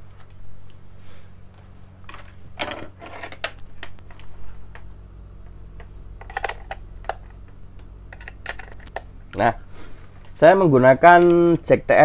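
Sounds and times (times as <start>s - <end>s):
steady low hum: 0.0s - 12.0s
jack plugs clicking and rattling: 5.8s - 9.1s.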